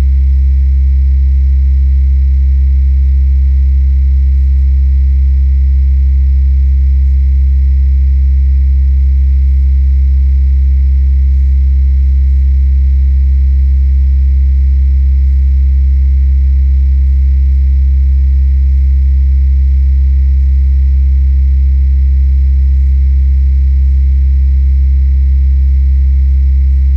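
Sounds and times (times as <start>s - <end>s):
deep electrical hum: 0.0s - 2.2s, 25.5s - 26.9s.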